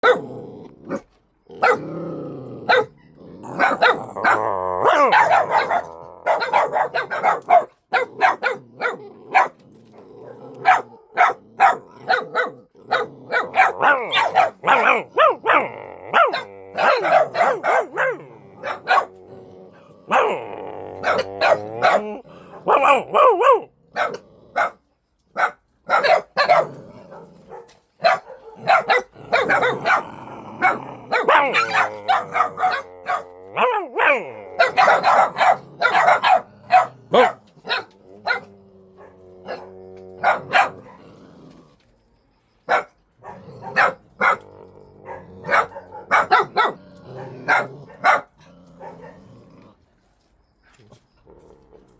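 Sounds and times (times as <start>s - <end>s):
dogs barking: 0.0s - 0.3s, 1.6s - 1.9s, 2.6s - 9.6s, 10.3s - 19.3s, 20.1s - 24.8s, 25.4s - 41.1s, 42.7s - 49.3s
dogs howling and whining: 2.6s - 7.7s, 13.2s - 23.7s, 27.1s - 41.5s.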